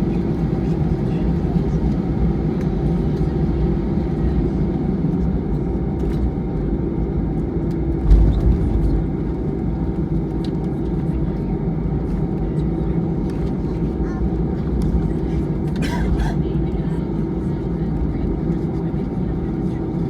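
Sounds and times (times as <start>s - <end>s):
jet engine cabin drone: 0.0s - 20.0s
low thump: 8.0s - 9.8s.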